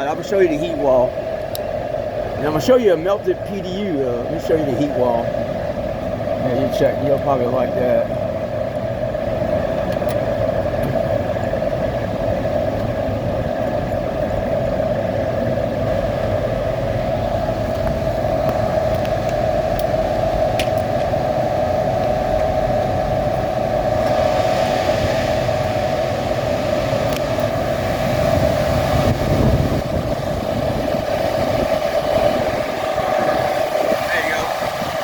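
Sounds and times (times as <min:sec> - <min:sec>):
cooling fans humming: 0:00.0 - 0:35.0
hiss of moving air: 0:10.2 - 0:35.0.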